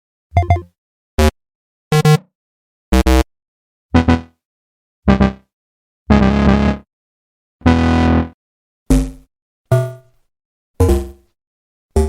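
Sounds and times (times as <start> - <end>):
two-note electronic alert: 8.9 - 10.1, 10.8 - 11.2.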